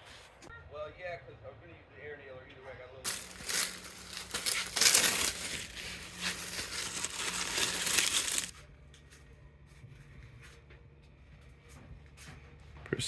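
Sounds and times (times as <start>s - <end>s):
packing material crumpling: 3.1s - 8.5s.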